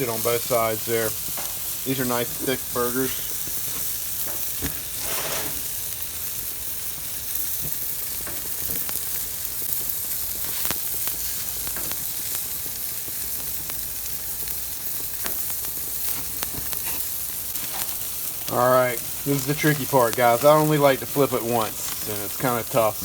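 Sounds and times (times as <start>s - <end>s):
burgers sizzling on a grill: 0.0s - 23.0s
fat popping: 3.1s - 5.6s, 15.0s - 19.2s.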